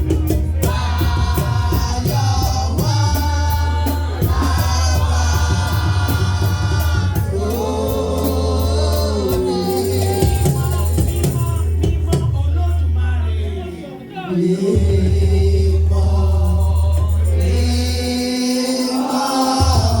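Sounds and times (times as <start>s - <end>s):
choir singing held notes: 0.0s - 12.2s, 12.8s - 20.0s
drums: 0.0s - 13.0s, 19.2s - 20.0s
bass line: 0.0s - 18.5s.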